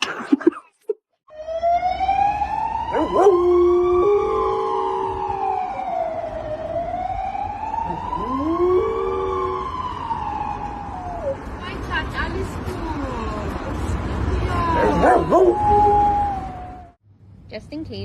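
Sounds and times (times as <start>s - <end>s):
siren wailing: 1.3s - 11.5s, 14.5s - 17.0s.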